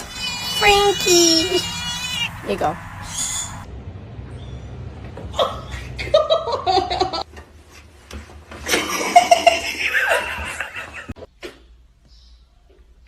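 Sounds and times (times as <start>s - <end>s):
person laughing: 5.3s - 7.2s, 8.7s - 11.2s.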